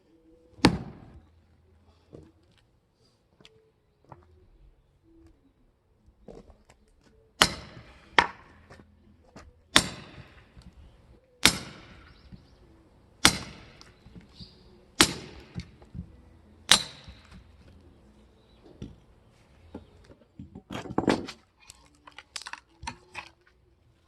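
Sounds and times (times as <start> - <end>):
axe chopping firewood: 0.6 - 1.2, 7.4 - 8.8, 9.4 - 10.8, 11.4 - 12.5, 13.2 - 17.9, 19.7 - 23.3.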